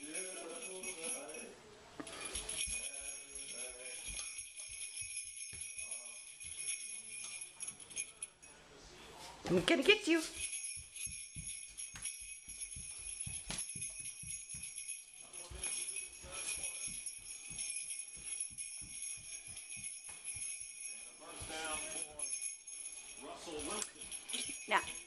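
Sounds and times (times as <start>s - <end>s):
sleigh bells jingling: 0.0s - 8.6s, 9.6s - 25.0s
soft low thumps: 10.4s - 20.9s.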